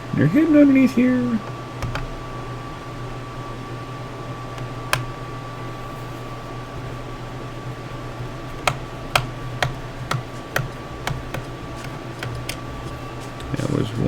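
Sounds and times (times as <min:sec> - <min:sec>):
steady low hum: 0:00.0 - 0:14.0
screwdriver clicks: 0:04.6 - 0:05.2, 0:08.6 - 0:12.7.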